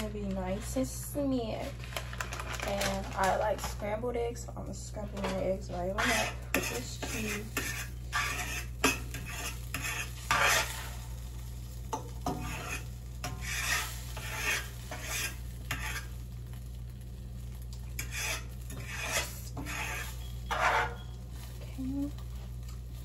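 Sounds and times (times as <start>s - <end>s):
light sizzle: 0.0s - 23.0s
utensil scraping a frying pan: 5.0s - 11.2s, 11.9s - 16.3s, 17.9s - 21.6s.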